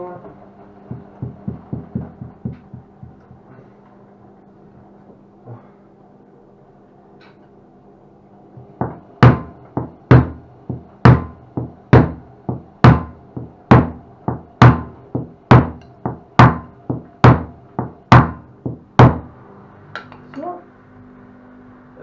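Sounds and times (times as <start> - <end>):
sharp knocks on washing machine: 0.9 - 3.6, 8.6 - 19.4.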